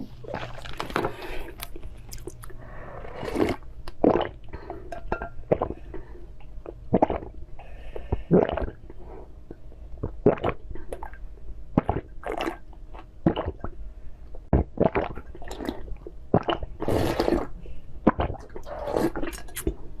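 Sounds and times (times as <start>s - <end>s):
wet chewing and slurping: 0.2s - 4.3s.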